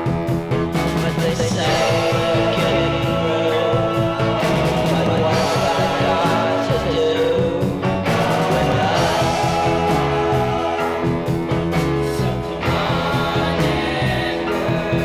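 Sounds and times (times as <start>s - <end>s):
rock music with singing: 0.0s - 15.0s.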